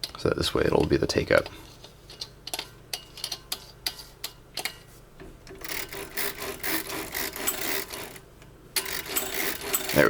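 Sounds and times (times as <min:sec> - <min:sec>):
typewriter ribbon mechanism clicking: 0:08.8 - 0:10.0.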